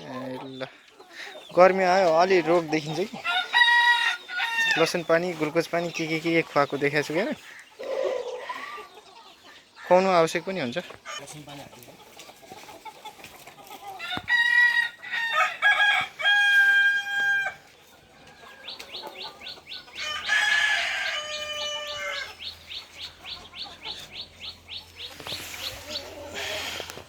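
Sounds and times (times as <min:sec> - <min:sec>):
hens clucking: 0:00.0 - 0:27.0
rooster crowing: 0:03.2 - 0:04.8, 0:14.0 - 0:17.6, 0:20.0 - 0:22.3.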